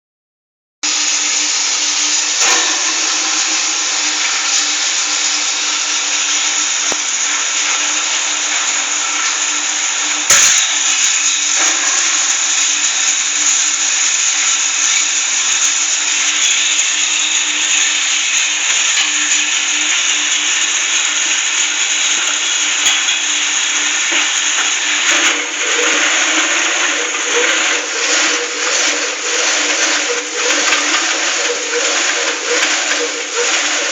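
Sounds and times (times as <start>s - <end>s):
shredder motor whirring: 22.0s - 33.9s.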